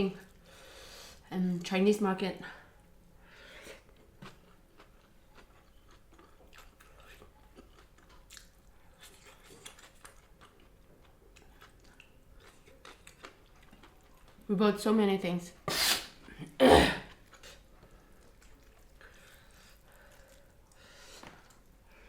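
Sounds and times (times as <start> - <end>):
person chewing food: 3.7 - 14.5, 16.2 - 22.0.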